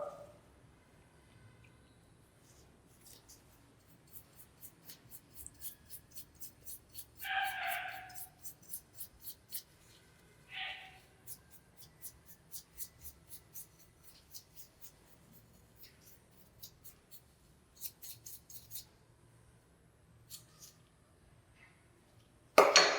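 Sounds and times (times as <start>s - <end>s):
hand scratching hard surface: 5.6s - 9.7s.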